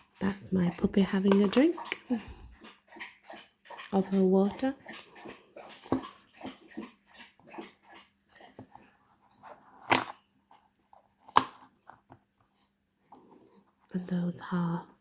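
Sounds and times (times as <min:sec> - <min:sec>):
dog lapping water: 0:00.1 - 0:09.0.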